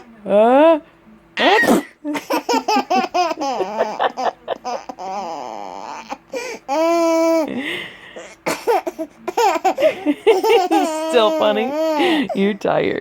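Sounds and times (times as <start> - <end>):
person fake sneezing: 1.4 - 2.0
baby laughing: 1.4 - 7.6, 8.2 - 12.4.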